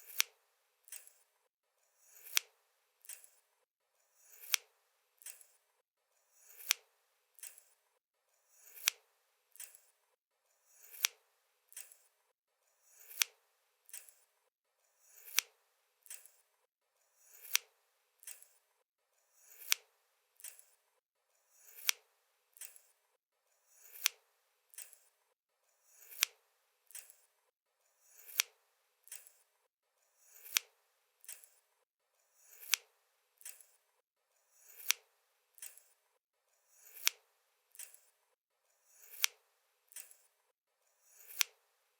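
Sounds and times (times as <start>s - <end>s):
scissors snipping: 0.0s - 1.2s, 2.2s - 3.4s, 4.3s - 5.6s, 6.5s - 7.8s, 8.6s - 9.9s, 10.8s - 12.1s, 13.0s - 14.3s, 15.2s - 16.4s, 17.3s - 18.6s, 19.5s - 20.8s, 21.7s - 22.0s, 22.6s - 22.9s, 23.8s - 25.1s, 26.0s - 27.2s, 28.2s - 29.4s, 30.4s - 31.6s, 32.5s - 33.8s, 34.7s - 35.0s, 35.6s - 35.9s, 36.8s - 38.1s, 39.0s - 40.3s, 41.2s - 41.6s
soft scissors click: 0.0s - 1.3s, 2.2s - 3.4s, 4.3s - 5.6s, 6.5s - 7.8s, 8.6s - 9.9s, 10.9s - 12.1s, 13.0s - 14.3s, 15.2s - 16.4s, 17.3s - 18.6s, 19.5s - 20.8s, 21.7s - 22.0s, 22.6s - 23.0s, 23.8s - 25.1s, 26.0s - 27.3s, 28.2s - 29.4s, 30.4s - 31.6s, 32.6s - 33.8s, 34.7s - 36.0s, 36.8s - 38.1s, 39.0s - 40.3s, 41.2s - 41.6s.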